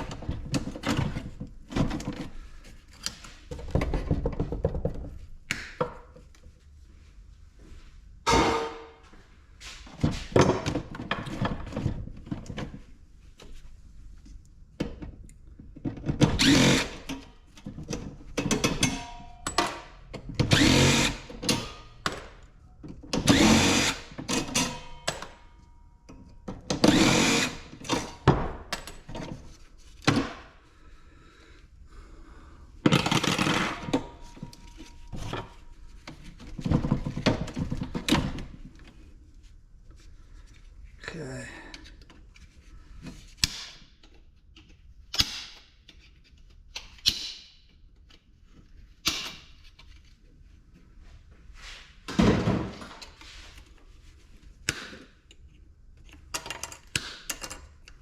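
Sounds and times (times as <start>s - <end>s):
power drill running in bursts: 16.4s - 17.0s, 20.5s - 21.3s, 23.3s - 24.1s, 26.9s - 27.7s.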